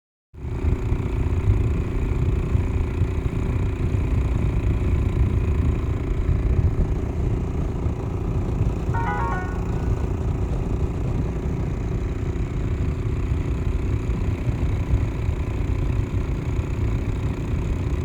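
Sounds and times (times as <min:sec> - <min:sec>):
boat motor rumbling: 0:06.7 - 0:13.5.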